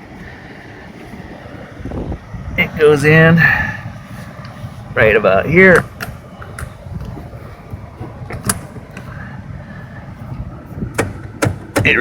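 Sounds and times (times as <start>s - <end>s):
low rumble of handling: 3.4s - 12.0s
seat belt latch clicking: 8.3s - 9.0s, 10.9s - 12.0s.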